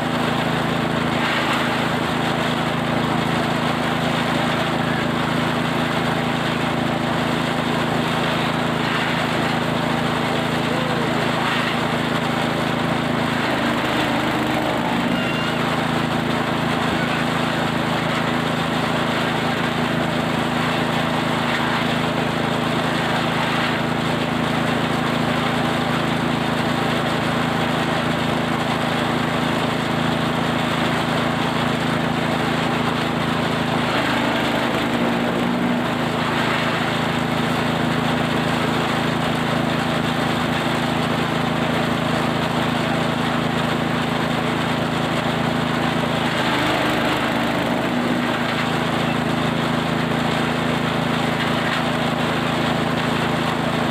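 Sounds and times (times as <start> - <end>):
forage chopper engine hum: 0.0 - 53.9.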